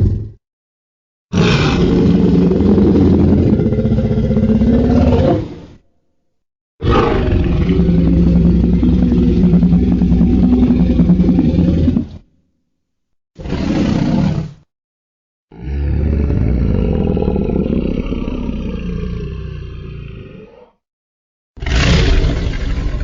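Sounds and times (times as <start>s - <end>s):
monster roar: 1.3s - 5.6s, 6.8s - 12.2s, 15.5s - 20.8s, 21.6s - 23.0s.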